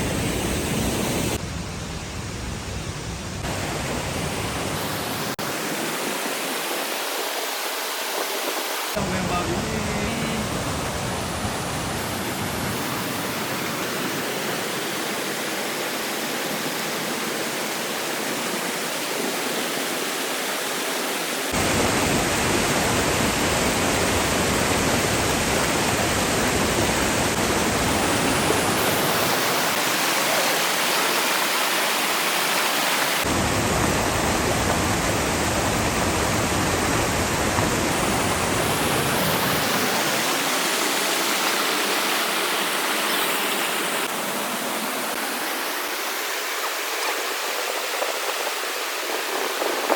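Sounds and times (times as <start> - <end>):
river water rushing: 3.4 - 49.9.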